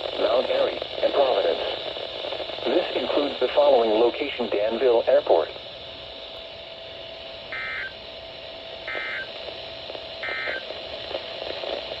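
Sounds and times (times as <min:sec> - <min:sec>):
radio hum and hiss: 0:00.0 - 0:12.0
short digital data bursts: 0:08.9 - 0:09.4, 0:10.2 - 0:10.7.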